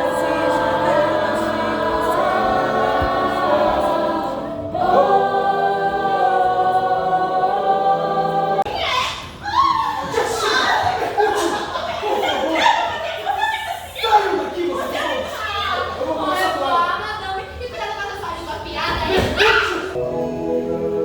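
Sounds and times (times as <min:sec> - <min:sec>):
choir singing sustained chords: 0:00.0 - 0:08.8, 0:20.0 - 0:21.0.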